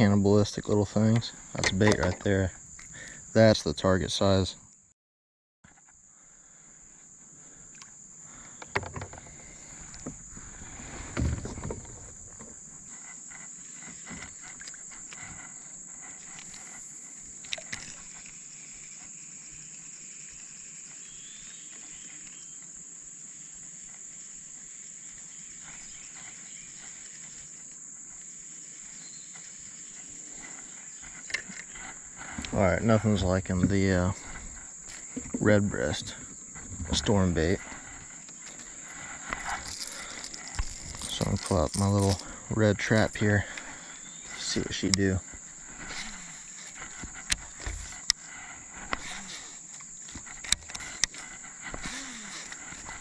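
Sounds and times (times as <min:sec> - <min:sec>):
crickets chirping: 0:00.0 - 0:04.9, 0:05.7 - 0:53.0
rustling: 0:25.7 - 0:53.0.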